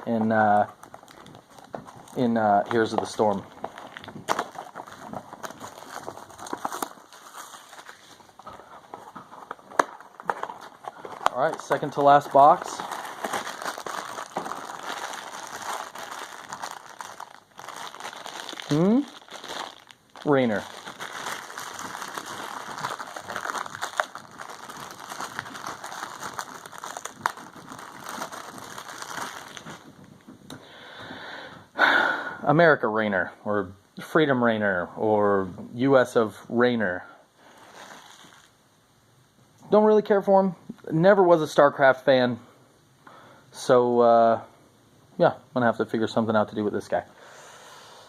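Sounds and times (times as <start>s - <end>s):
cardboard packaging rustling: 0.0s - 30.3s, 37.5s - 38.6s.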